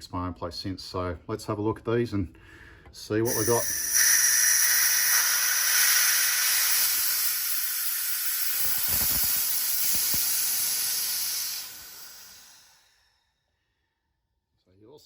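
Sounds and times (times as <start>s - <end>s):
air hissing out: 3.3s - 13.2s.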